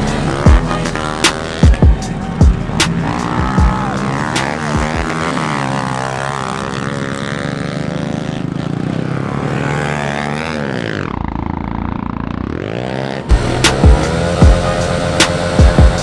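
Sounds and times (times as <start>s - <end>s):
pit bike engines revving: 0.0s - 16.0s.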